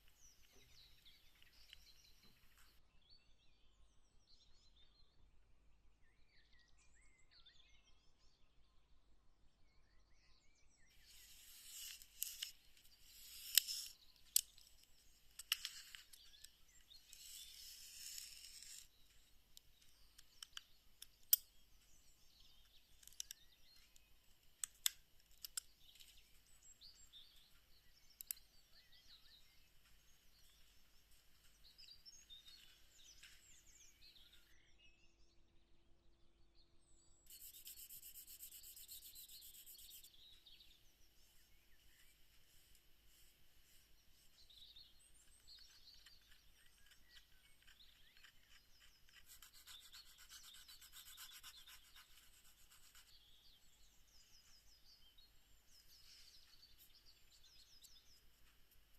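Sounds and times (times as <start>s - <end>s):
rustling and scraping: 11.1s - 20.4s.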